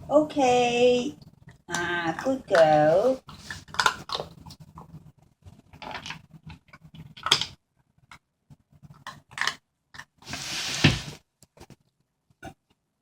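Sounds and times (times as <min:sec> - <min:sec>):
puppy crunching food: 0:01.3 - 0:10.3.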